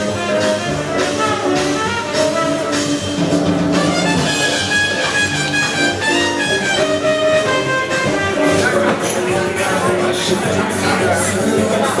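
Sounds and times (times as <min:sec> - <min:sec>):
violin background music: 0:00.0 - 0:09.2.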